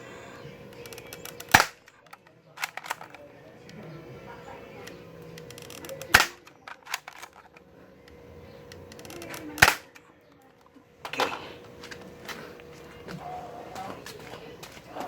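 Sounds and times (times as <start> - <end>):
handling clicks: 0.7 - 3.9, 4.8 - 12.7
spring pistol firing snap: 0.8 - 3.2, 5.4 - 7.4, 8.7 - 10.0.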